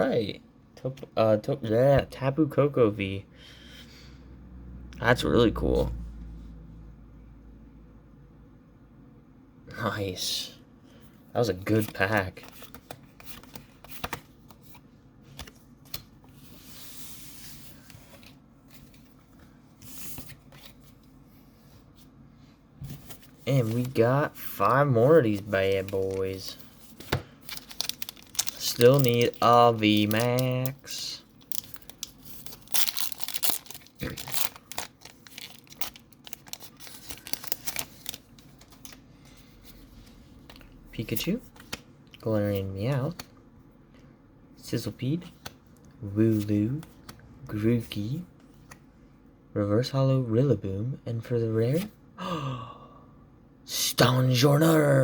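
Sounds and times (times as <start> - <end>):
cards sliding rustle: 11.6 - 22.1, 22.8 - 40.7
cards tapping and clicking: 11.7 - 14.7
foil wrapper tearing and crinkling: 27.5 - 30.8, 31.4 - 38.3.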